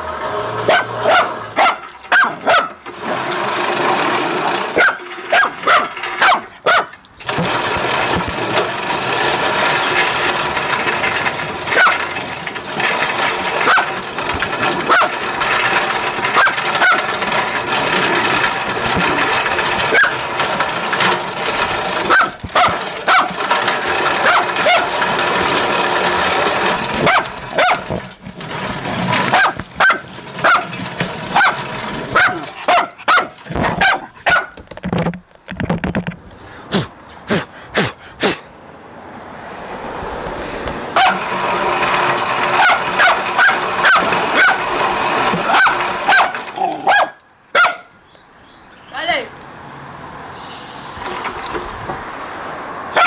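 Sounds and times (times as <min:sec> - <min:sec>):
lawnmower engine running: 0:00.0 - 0:36.4, 0:39.0 - 0:48.0, 0:48.8 - 0:53.0
dog barking: 0:00.7 - 0:02.8, 0:04.8 - 0:07.0, 0:11.7 - 0:12.0, 0:13.7 - 0:13.9, 0:14.9 - 0:15.2, 0:16.4 - 0:17.1, 0:22.1 - 0:23.4, 0:24.2 - 0:24.9, 0:27.0 - 0:27.9, 0:29.3 - 0:30.7, 0:31.4 - 0:34.6, 0:41.0 - 0:41.2, 0:42.6 - 0:44.6, 0:45.5 - 0:47.9.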